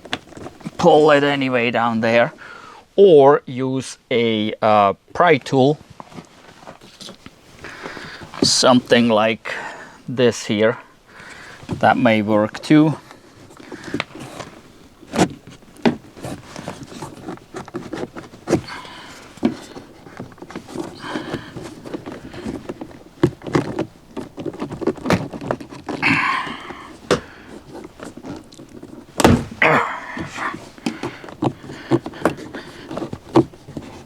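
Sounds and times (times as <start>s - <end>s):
plastic scraping: 0.0s - 0.9s, 11.2s - 34.0s.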